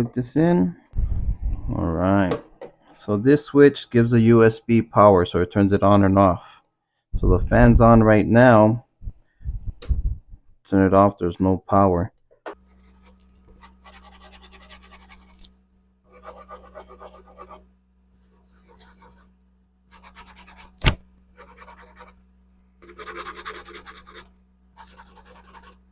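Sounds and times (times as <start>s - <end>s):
scratchy rubbing: 12.7s - 15.5s, 16.1s - 17.6s, 18.2s - 19.3s, 19.9s - 20.8s, 21.4s - 22.2s, 22.8s - 25.8s.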